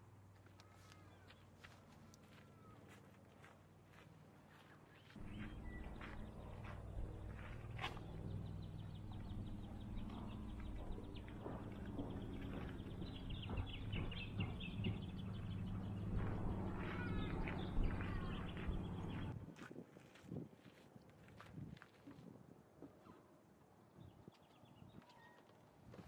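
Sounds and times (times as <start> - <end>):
birds chirping and warbling: 4.5 - 19.4
steady low hum: 5.1 - 19.4.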